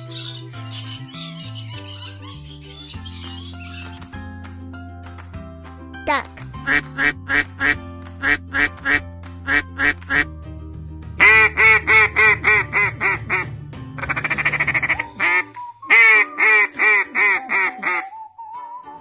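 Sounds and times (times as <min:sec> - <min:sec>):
soft background music: 0:00.0 - 0:19.0
duck quacking: 0:06.6 - 0:10.3, 0:11.2 - 0:18.1.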